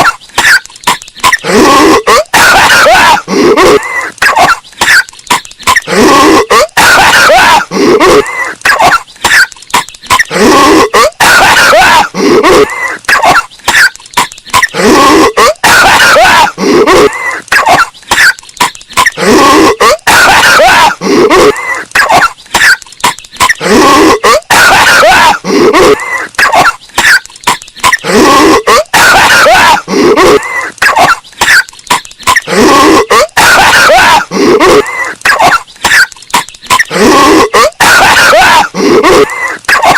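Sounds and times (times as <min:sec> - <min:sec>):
distorted cartoon coughing: 0:00.0 - 0:39.9.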